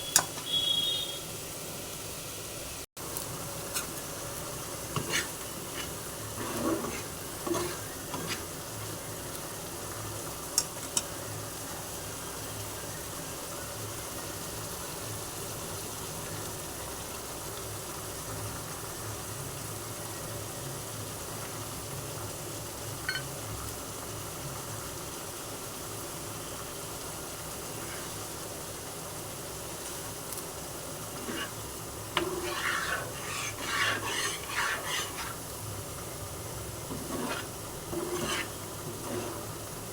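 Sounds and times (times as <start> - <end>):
food frying in a pan: 0.0 - 39.9
spatula scraping a pan: 3.6 - 8.8, 27.6 - 28.5, 30.9 - 39.9.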